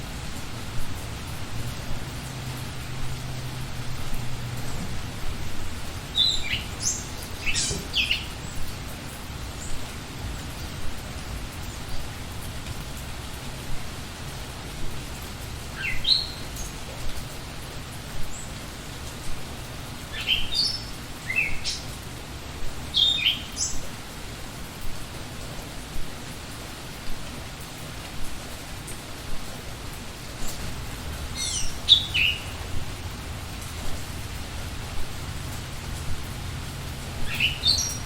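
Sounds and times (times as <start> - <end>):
steady rain falling: 0.0 - 38.0
birds chirping: 4.0 - 8.9, 15.6 - 17.6, 20.1 - 22.0, 22.9 - 23.9, 30.4 - 34.6, 37.0 - 38.0.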